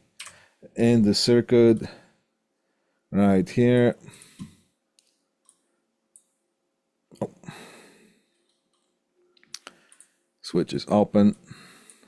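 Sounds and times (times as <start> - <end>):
computer mouse clicks: 4.2 - 6.4, 8.4 - 10.2.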